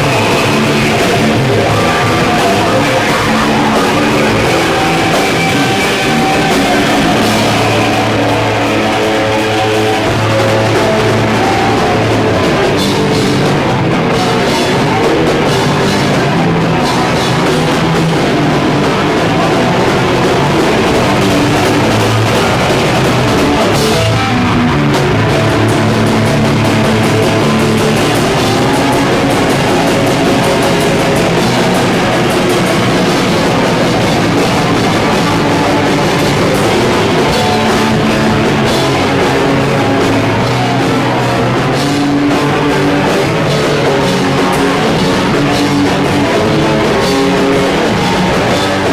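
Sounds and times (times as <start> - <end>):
bass guitar: 0.0 - 48.9
distorted guitar: 0.0 - 48.9
drum kit: 0.0 - 48.9.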